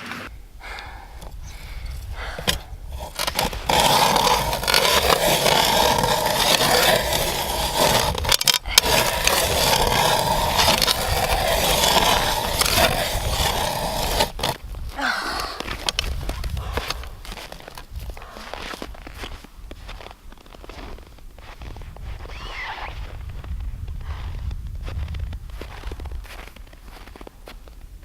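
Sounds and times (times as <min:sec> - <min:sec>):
ice auger grinding through ice: 0:02.3 - 0:14.6.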